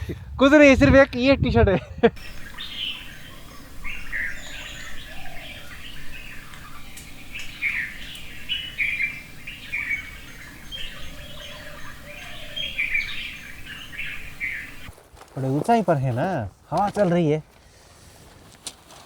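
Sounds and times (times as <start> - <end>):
wind rumble on microphone: 0.0 - 14.9
birds chirping: 1.8 - 14.9.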